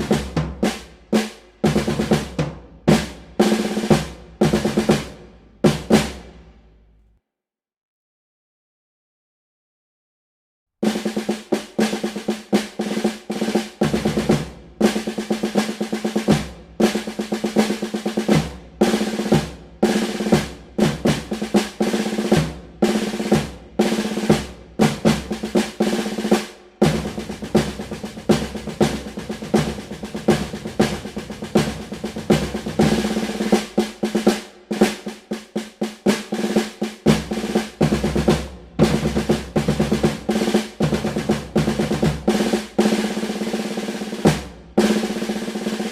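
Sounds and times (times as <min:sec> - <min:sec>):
snare drum rolls: 0:00.0 - 0:06.8, 0:10.8 - 0:45.9.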